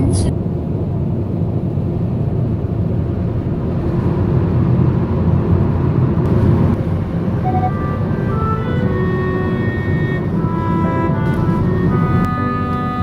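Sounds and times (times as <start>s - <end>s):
car road and engine noise: 0.0s - 13.0s
music: 6.8s - 13.0s.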